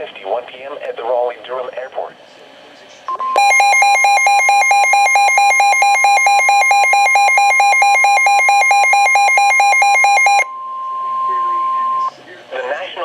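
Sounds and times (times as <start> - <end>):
rapid electronic alarm beeping: 3.3 - 12.1.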